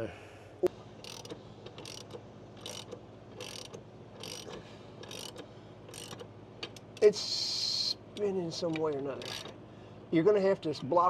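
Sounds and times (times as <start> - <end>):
socket ratchet clicking: 1.0 - 7.1, 8.2 - 9.6.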